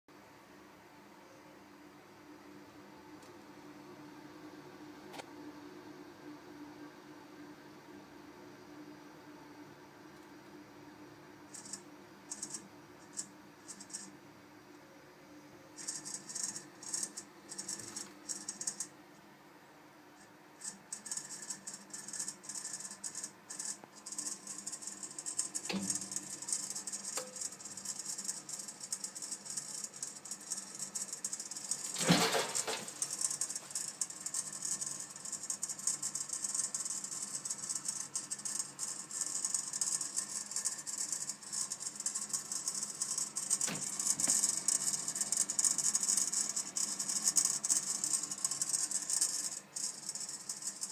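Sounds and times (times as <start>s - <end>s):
boiler crackling rattle: 15.8s - 18.9s, 20.6s - 50.9s.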